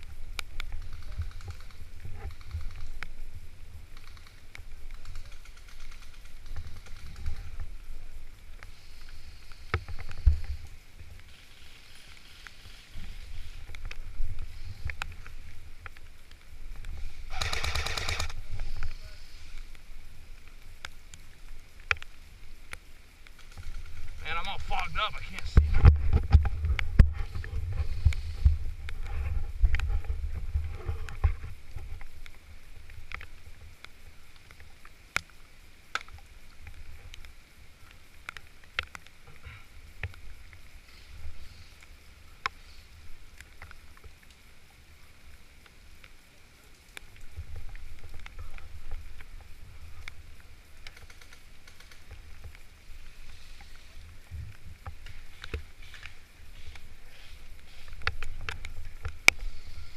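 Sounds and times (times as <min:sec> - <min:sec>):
sharp clicks: 0:03.9 - 0:07.6, 0:14.8 - 0:19.0, 0:50.8 - 0:52.2.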